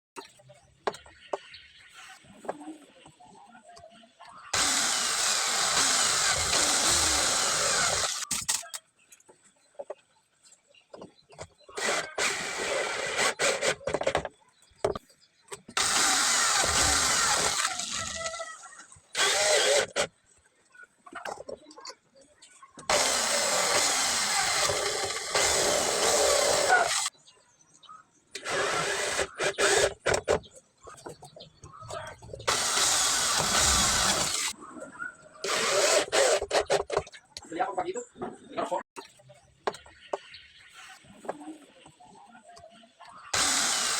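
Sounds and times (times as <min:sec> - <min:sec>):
power drill running: 0:04.5 - 0:08.3, 0:11.8 - 0:13.8, 0:15.8 - 0:20.1, 0:22.9 - 0:27.1, 0:28.4 - 0:30.2, 0:32.5 - 0:34.5, 0:35.4 - 0:36.8, 0:43.4 - 0:43.9.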